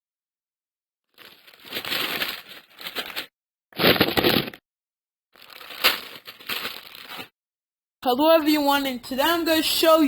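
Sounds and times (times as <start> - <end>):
rustling crinkling noise: 1.1 - 4.6, 5.4 - 7.3.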